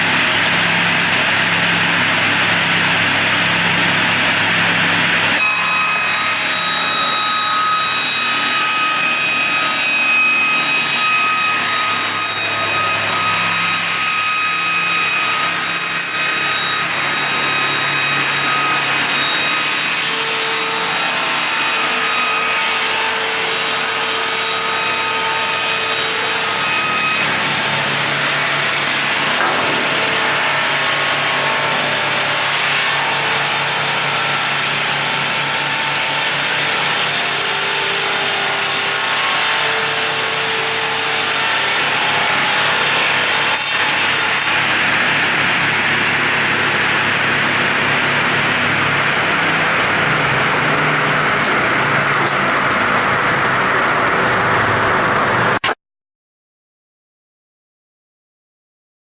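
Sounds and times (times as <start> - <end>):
saw blades cutting wood: 0.0 - 55.8
circular saw machine running: 24.5 - 55.7.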